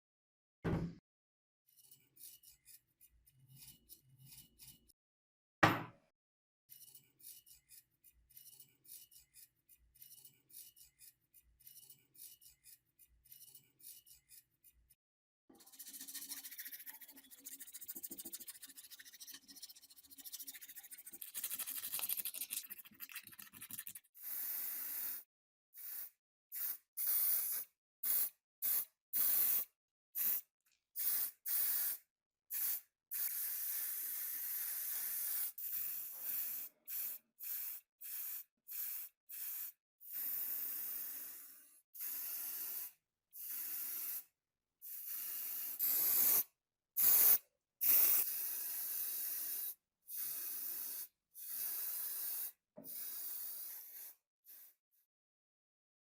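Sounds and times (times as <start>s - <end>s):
sharp knock: 0.6s - 1.0s, 5.6s - 6.0s
rubbing on metal: 15.6s - 24.0s
aerosol spray can bursts: 24.2s - 25.2s, 25.8s - 30.4s, 45.1s - 49.0s.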